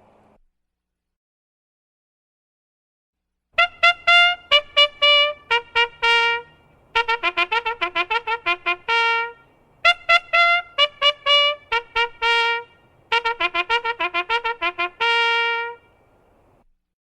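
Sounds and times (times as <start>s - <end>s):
trumpet fanfare: 3.6s - 16.0s.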